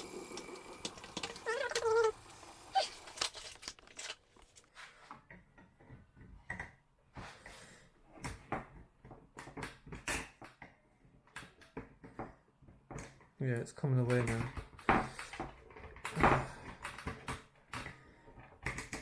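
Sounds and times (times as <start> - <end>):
screwdriver clicking and scraping: 2.8 - 4.7.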